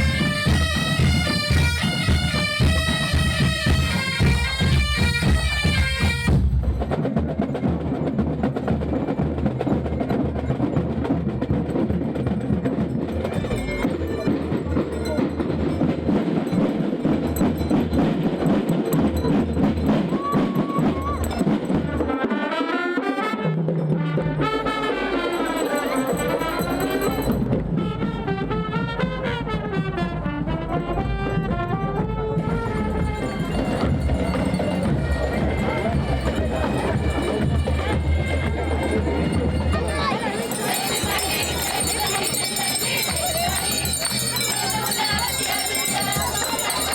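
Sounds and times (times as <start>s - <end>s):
bagpipe-like wind melody: 0.0s - 6.8s, 20.1s - 46.9s
snare and bass drums marching beat: 0.0s - 46.9s.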